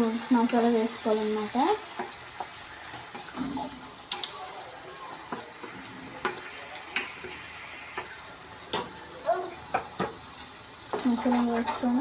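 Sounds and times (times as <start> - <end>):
curry sizzling in a pan: 0.0 - 12.0
metal spoon scraping a pan: 1.3 - 4.7, 5.3 - 8.9, 10.9 - 12.0.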